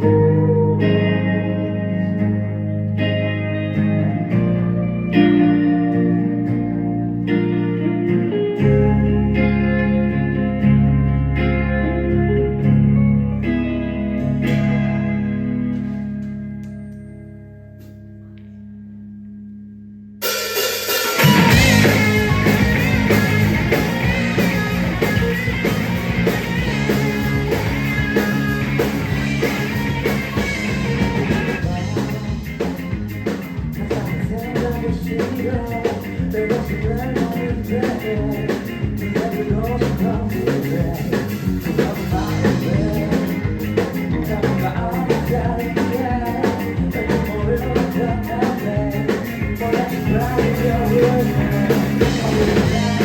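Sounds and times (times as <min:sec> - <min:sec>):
rock band playing: 0:00.0 - 0:17.1, 0:20.2 - 0:53.0
drums steady beat: 0:20.2 - 0:53.0.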